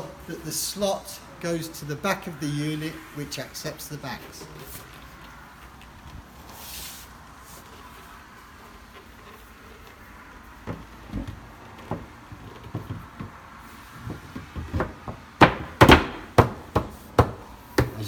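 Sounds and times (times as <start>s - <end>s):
wood knocking on wood: 9.0s - 18.0s
loud sharp knocks: 14.0s - 18.0s.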